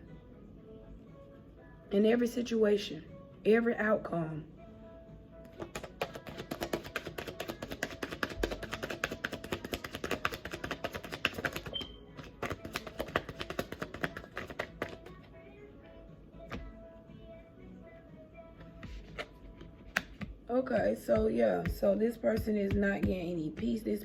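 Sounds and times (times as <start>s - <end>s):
soft background music: 0.0s - 24.0s
cards being shuffled: 5.5s - 15.3s, 18.6s - 20.4s.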